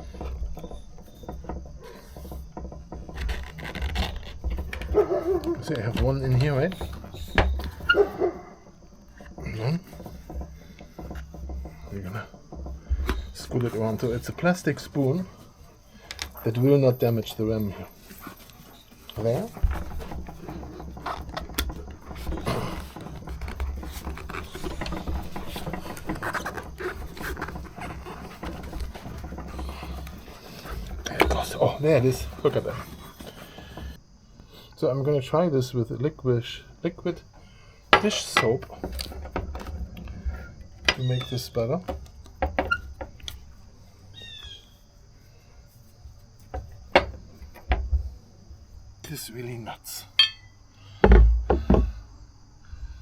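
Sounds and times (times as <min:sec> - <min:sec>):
spoon scraping rubber tire: 0:00.0 - 0:34.0.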